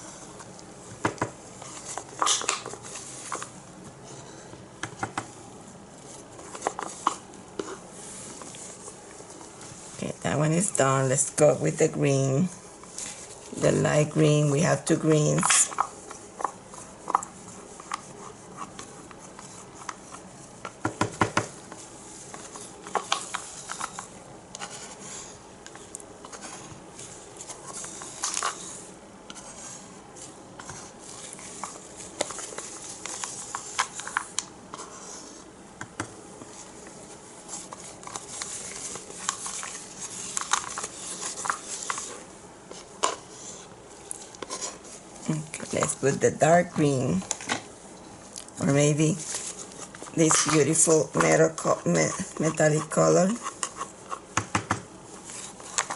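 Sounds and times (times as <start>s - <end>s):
plastic cups scraping and tapping: 15.2s - 26.6s, 49.1s - 55.9s.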